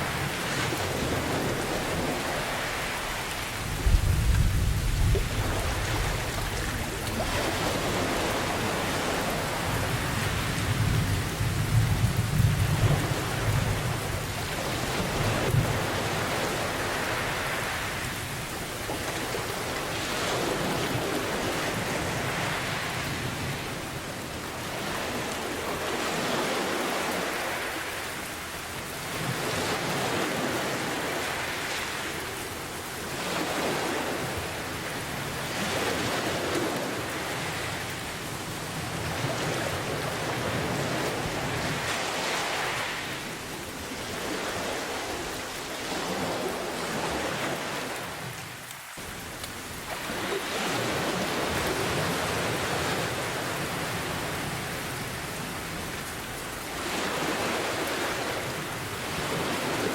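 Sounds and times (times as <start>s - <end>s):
ocean waves washing: 0.0s - 59.9s
steady rain: 0.0s - 59.9s
rolling thunder rumble: 3.6s - 8.8s.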